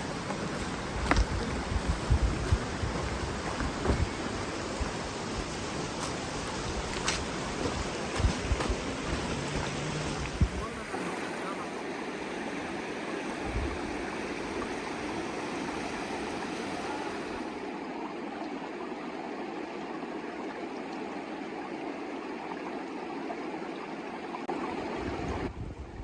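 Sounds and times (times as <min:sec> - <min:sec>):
river rushing: 0:00.0 - 0:17.8.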